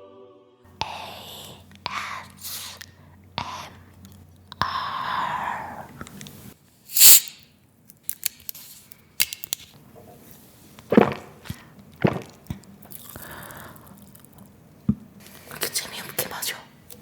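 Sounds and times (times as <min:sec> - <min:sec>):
person sipping and gulping: 0:00.8 - 0:06.3, 0:10.8 - 0:14.5
sharp hiss: 0:06.9 - 0:07.4.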